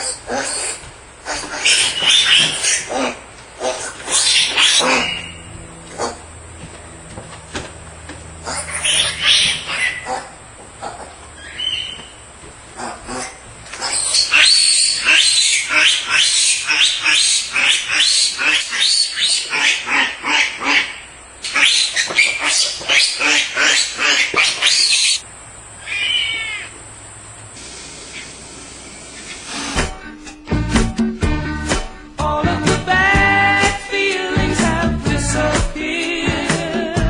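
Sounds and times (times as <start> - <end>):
piglet squealing: 0.0 - 6.2, 8.4 - 12.2, 12.8 - 25.2, 25.8 - 26.8.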